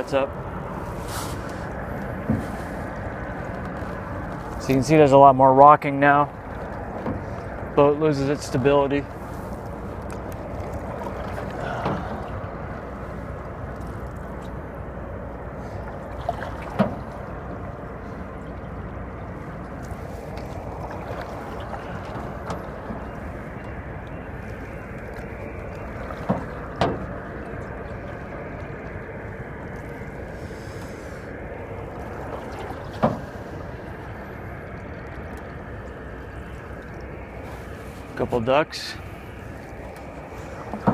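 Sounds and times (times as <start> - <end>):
water lapping against boat hull: 0.0 - 40.9
knocks against boat: 2.1 - 2.6, 6.5 - 7.8, 10.1 - 12.3, 16.3 - 17.2, 26.1 - 27.2, 32.3 - 33.4, 40.6 - 40.9.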